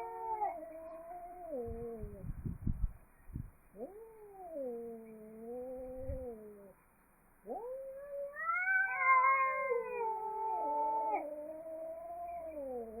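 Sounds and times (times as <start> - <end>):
angry cat yowling: 0.0 - 2.2, 7.5 - 13.0.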